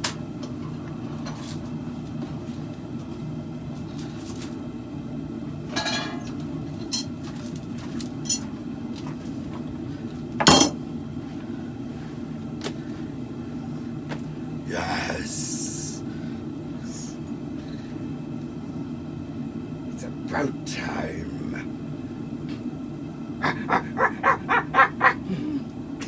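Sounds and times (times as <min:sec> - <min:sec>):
steady low hum: 0:09.8 - 0:26.0.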